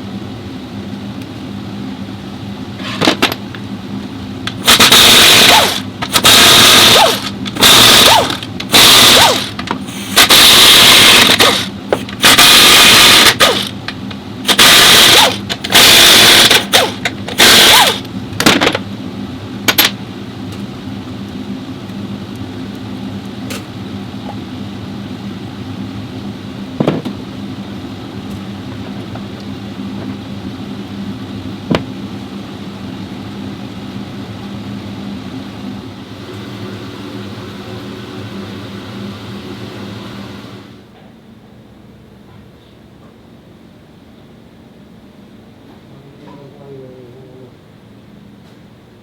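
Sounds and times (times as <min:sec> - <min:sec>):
steady low hum: 0:00.0 - 0:40.0
pneumatic power tool bursts: 0:04.5 - 0:13.8, 0:14.4 - 0:18.0.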